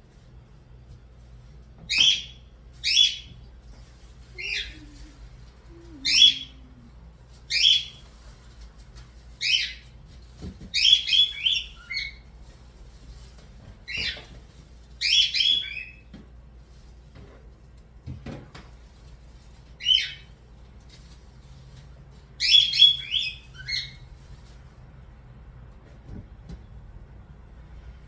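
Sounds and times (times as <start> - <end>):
bird chirping: 1.9 - 3.5, 4.3 - 6.8, 7.5 - 8.0, 9.4 - 9.8, 10.8 - 12.2, 15.0 - 16.0, 19.8 - 20.3, 22.4 - 24.1.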